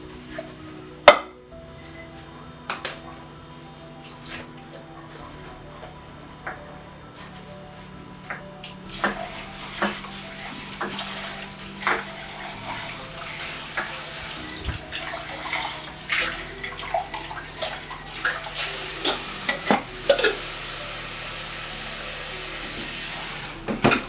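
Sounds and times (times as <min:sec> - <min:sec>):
cookware clinking and clattering: 0:01.0 - 0:03.3, 0:13.3 - 0:20.5
kitchen tap running: 0:08.6 - 0:24.0.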